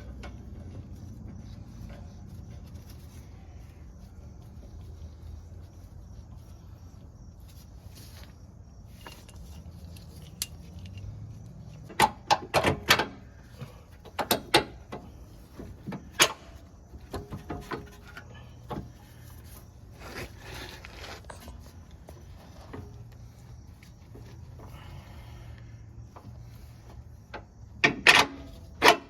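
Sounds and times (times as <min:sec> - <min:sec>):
metal tools clinking and knocking: 0:08.9 - 0:11.1.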